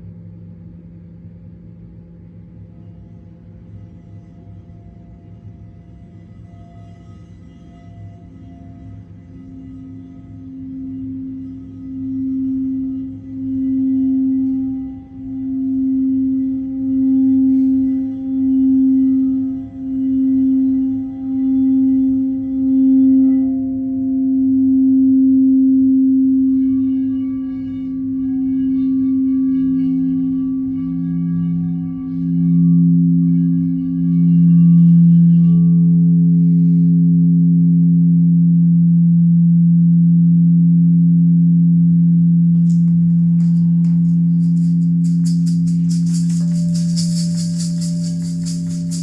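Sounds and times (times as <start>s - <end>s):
ringing metallic tones: 42.6s - 49.0s
soft high rattle: 42.6s - 49.0s.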